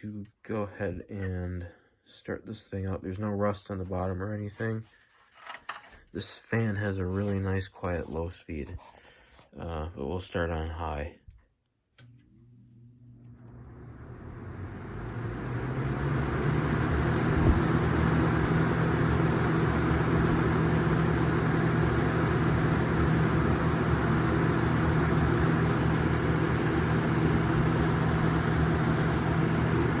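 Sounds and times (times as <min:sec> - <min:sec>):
low motor hum: 0:12.4 - 0:30.0
box fan whooshing air: 0:13.6 - 0:30.0.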